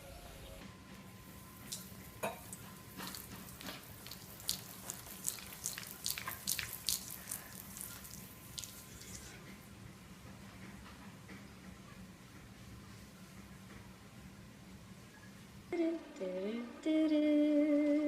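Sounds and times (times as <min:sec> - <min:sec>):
water dripping and splashing: 0:01.6 - 0:09.4.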